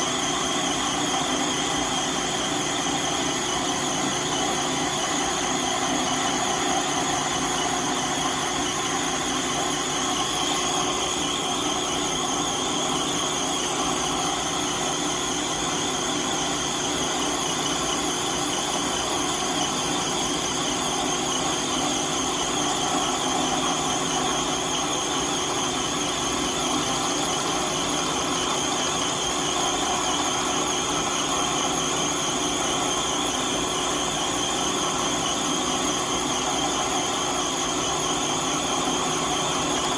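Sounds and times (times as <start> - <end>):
metal lathe droning: 0.0 - 31.9.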